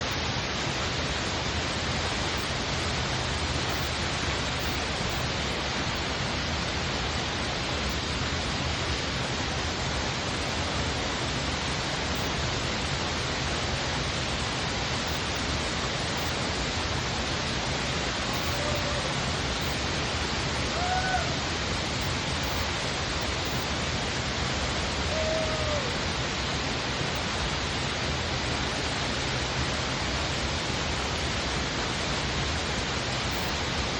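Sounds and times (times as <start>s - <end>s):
waterfall rushing: 0.1s - 33.9s.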